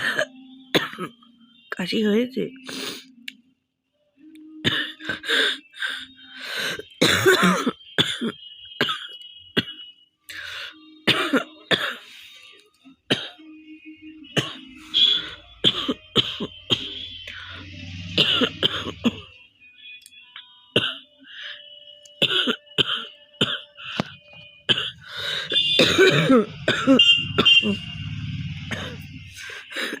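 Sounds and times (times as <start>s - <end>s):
woman coughing: 0.0s - 1.3s, 4.6s - 5.4s, 7.0s - 9.9s, 11.0s - 12.1s, 13.1s - 13.4s, 14.4s - 17.1s, 18.2s - 19.3s, 20.8s - 21.0s, 22.2s - 24.1s, 24.7s - 27.9s, 28.7s - 30.0s
throat clearing: 18.2s - 19.3s, 28.7s - 29.2s.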